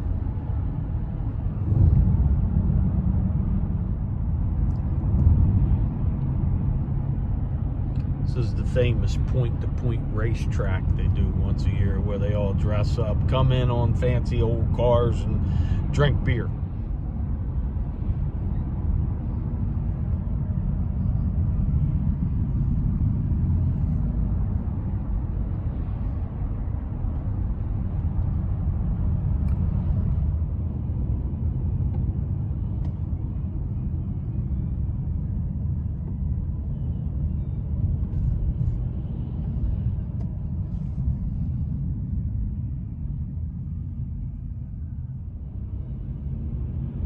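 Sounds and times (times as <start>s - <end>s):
car engine and tyre rumble: 0.0s - 47.0s.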